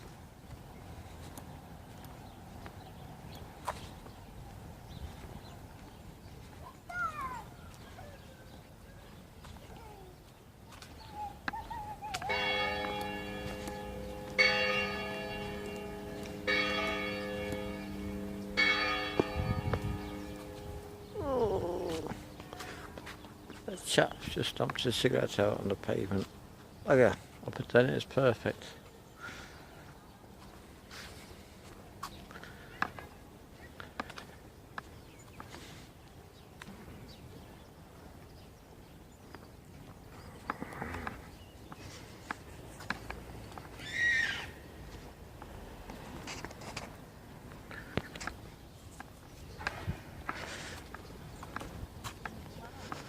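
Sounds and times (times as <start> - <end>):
church bell ringing: 12.2 - 23.2.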